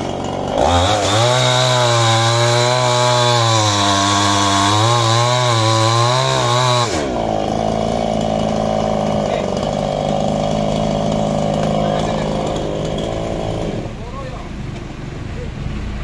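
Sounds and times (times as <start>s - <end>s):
chainsaw cutting wood: 0.0s - 14.1s.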